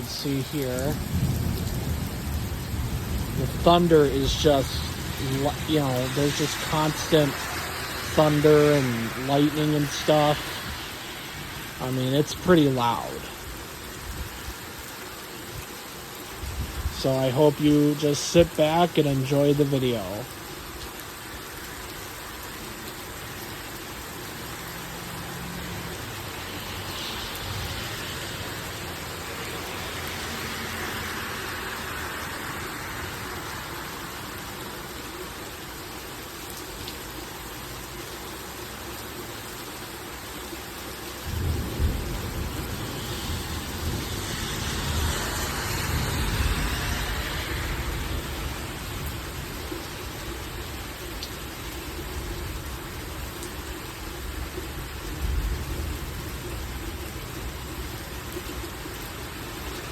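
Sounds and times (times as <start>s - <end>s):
thunder rumble: 0.0s - 11.0s, 41.2s - 49.7s
heavy rain pouring: 0.0s - 59.9s.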